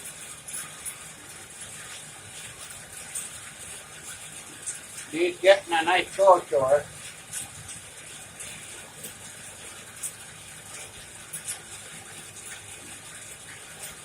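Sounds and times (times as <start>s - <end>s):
fire crackles and pops: 0.0s - 14.0s.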